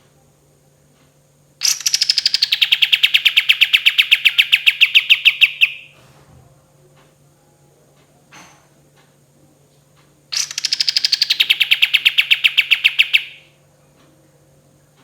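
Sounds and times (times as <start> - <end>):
songbird rapid rolling trill: 1.6 - 5.9, 10.3 - 13.5.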